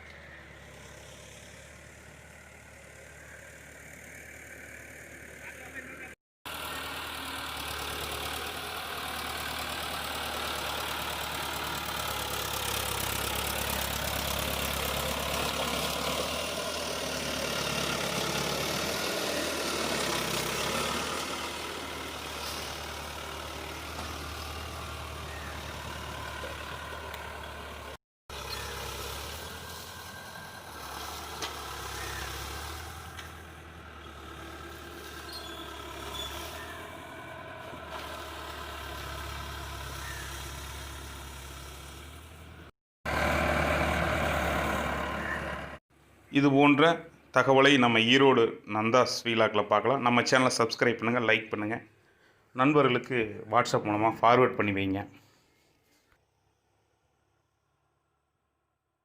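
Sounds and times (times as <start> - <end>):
tractor engine ploughing: 0.0 - 45.8.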